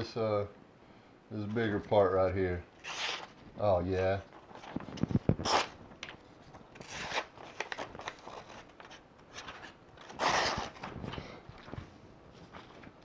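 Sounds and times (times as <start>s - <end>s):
knife slicing paper: 2.8s - 3.3s, 5.4s - 5.8s, 6.8s - 8.5s, 10.1s - 10.8s.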